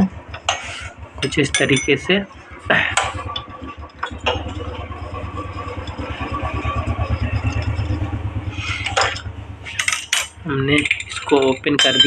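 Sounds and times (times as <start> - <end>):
small engine idling: 0.0 - 12.0
metal clinks of hand tool: 9.8 - 12.0.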